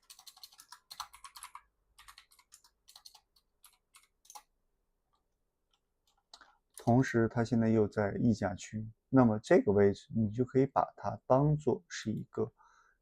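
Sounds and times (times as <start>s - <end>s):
computer keyboard typing: 0.0s - 4.5s, 5.1s - 7.0s.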